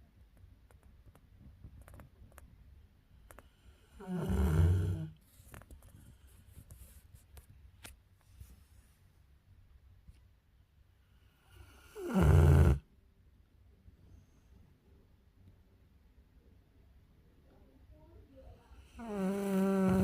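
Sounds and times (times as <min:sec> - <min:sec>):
dog snoring loudly: 0:03.9 - 0:05.2, 0:11.6 - 0:12.9, 0:19.0 - 0:20.0.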